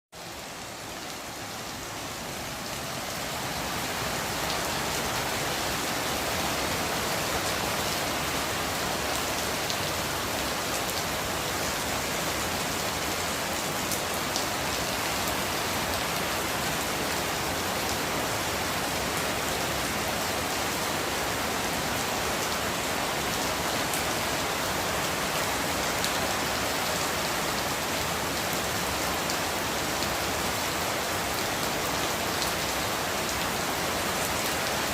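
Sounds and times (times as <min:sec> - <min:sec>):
rain falling: 0:00.2 - 0:34.9.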